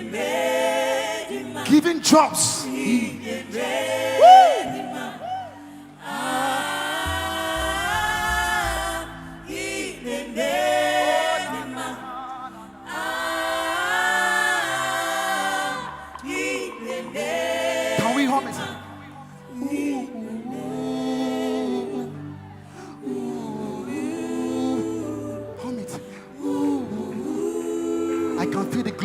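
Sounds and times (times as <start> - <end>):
choir singing gospel: 0.0 - 29.0
low instrumental backing: 6.9 - 12.0
singers breathing: 22.6 - 23.1.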